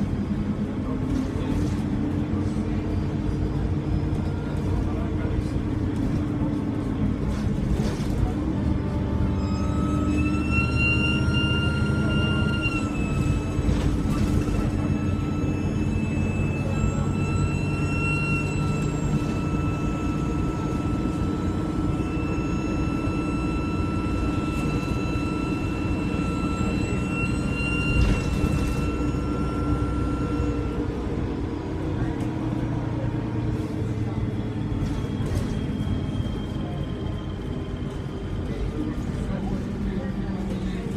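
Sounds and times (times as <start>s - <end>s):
diesel engine drone: 0.0s - 40.9s
turbocharger whistle: 9.3s - 13.6s.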